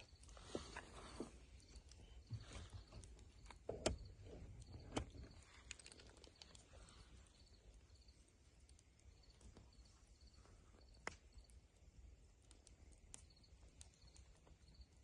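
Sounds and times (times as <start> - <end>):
insects chirping: 0.0 - 11.8, 12.6 - 15.0
sharp snaps: 10.8 - 11.6.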